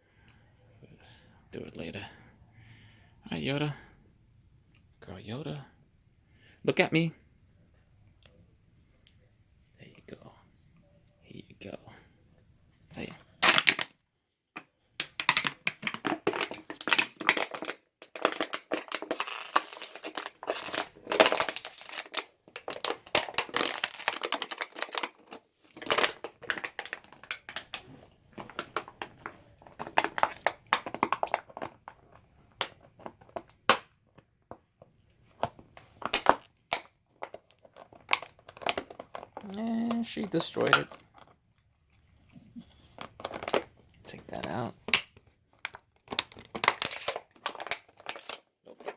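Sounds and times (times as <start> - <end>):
dog chewing plastic bottle: 15.0 - 34.2, 35.4 - 41.4, 42.2 - 48.9.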